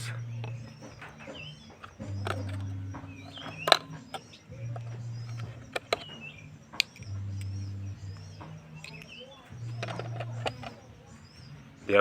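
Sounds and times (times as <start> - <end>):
handling clicks: 0.0 - 11.0
low hum: 0.0 - 11.8
small birds chirping: 0.0 - 12.0.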